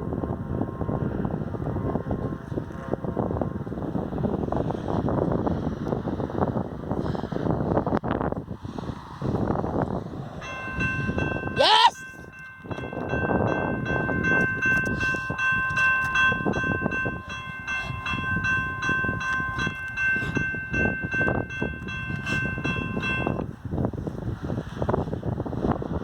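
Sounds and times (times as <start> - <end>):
locomotive multi-chime air horn: 0.5 - 5.0, 10.4 - 23.5.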